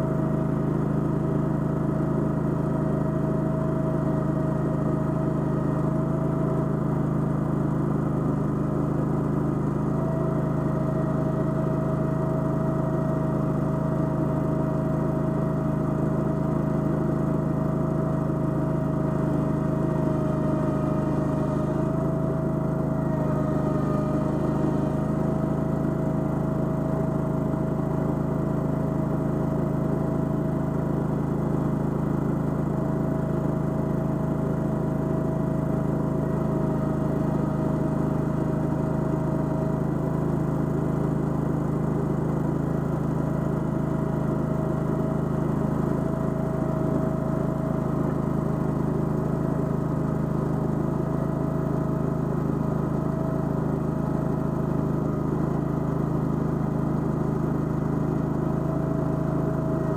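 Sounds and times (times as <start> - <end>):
gasoline engine running steadily: 0.0 - 59.9
constant whine: 16.8 - 30.1.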